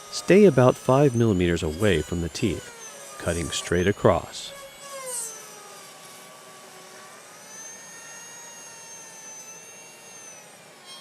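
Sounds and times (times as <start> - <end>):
dental handpiece whine: 0.0 - 11.0.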